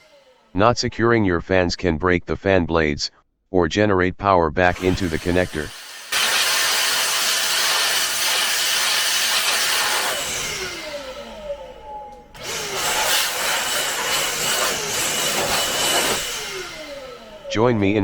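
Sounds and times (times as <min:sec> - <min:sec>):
compressed air blowing: 0:04.8 - 0:11.1, 0:12.4 - 0:18.0
falling fan whine: 0:09.3 - 0:18.0.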